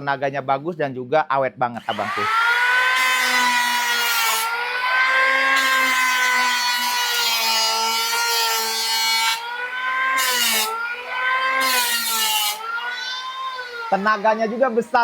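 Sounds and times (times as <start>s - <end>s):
electric planer motor whine: 1.8s - 15.0s.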